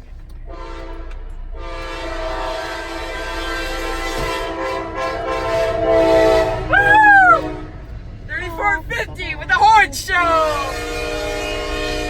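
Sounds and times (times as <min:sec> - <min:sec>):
locomotive air horn blast: 0:00.5 - 0:07.9, 0:10.2 - 0:12.0
person whooping: 0:06.7 - 0:07.4, 0:08.5 - 0:10.7.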